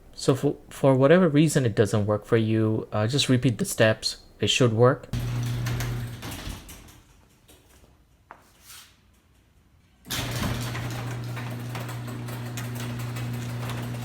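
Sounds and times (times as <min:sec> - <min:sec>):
garage door motor hum: 0:05.1 - 0:07.1, 0:10.0 - 0:14.0.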